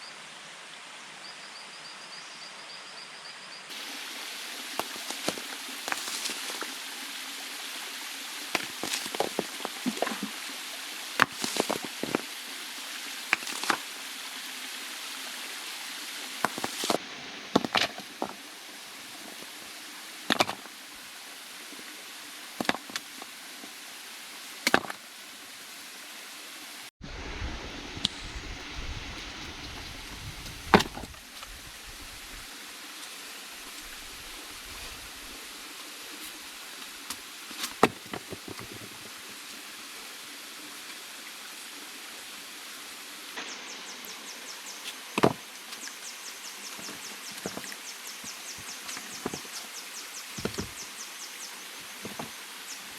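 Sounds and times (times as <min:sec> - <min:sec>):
falling rain and running water: 0:00.0 - 0:52.9
low rumble: 0:27.0 - 0:30.8.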